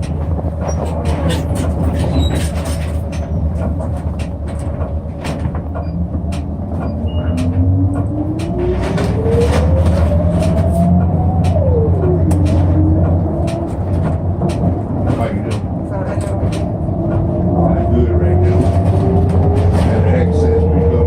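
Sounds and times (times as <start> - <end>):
bus engine rumble: 0.0 - 21.0
rising whine: 7.1 - 14.3.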